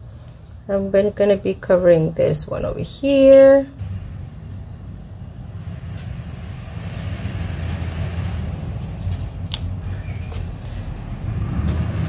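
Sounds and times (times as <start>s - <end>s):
steady low hum: 0.0s - 12.0s
tape and paper rustling: 8.8s - 11.1s.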